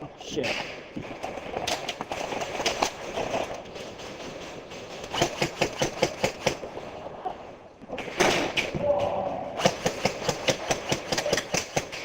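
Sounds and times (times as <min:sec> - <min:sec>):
airsoft rifle shots: 0:01.6 - 0:06.6, 0:09.6 - 0:12.0.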